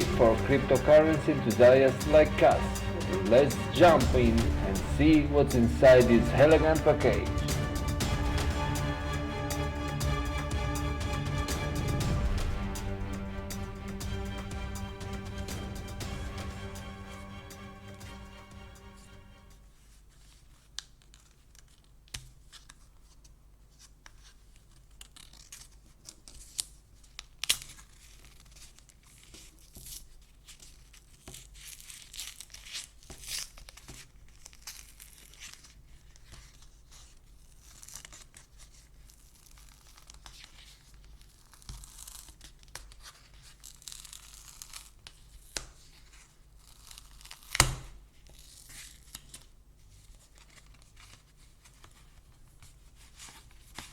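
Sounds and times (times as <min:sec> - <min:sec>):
wrapping tearing and crinkling: 0:20.5 - 0:53.9.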